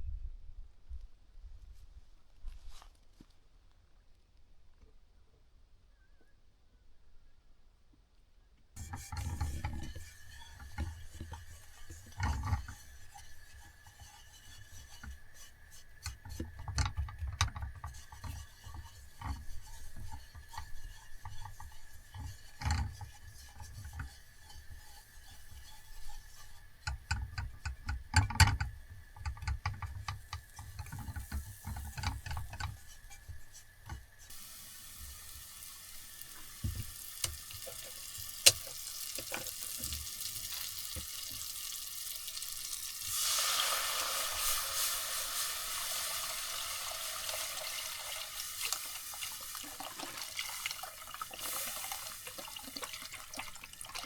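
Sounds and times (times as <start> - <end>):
utensil scraping in a pan: 8.8 - 54.0
steady hiss: 28.8 - 53.8.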